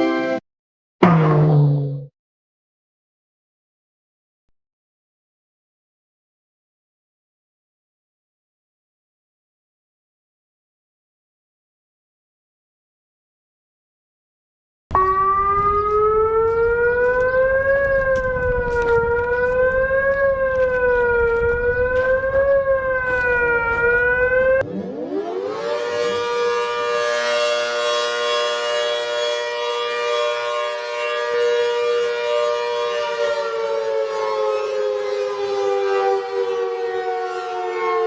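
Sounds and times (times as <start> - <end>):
wavering alert siren: 1.0 - 2.1, 14.9 - 38.0
siren holding steady tone: 14.9 - 38.0.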